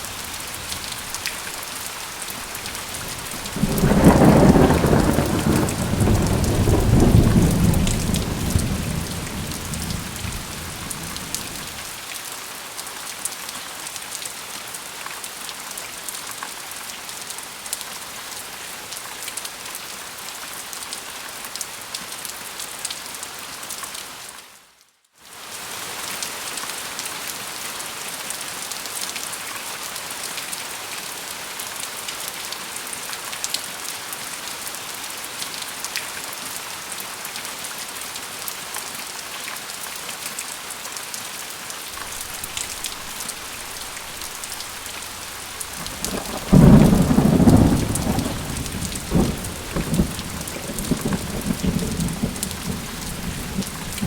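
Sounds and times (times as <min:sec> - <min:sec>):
thunder rumbling: 0:00.0 - 0:11.9, 0:42.0 - 0:54.0
steady rain: 0:00.0 - 0:24.6, 0:25.2 - 0:54.0.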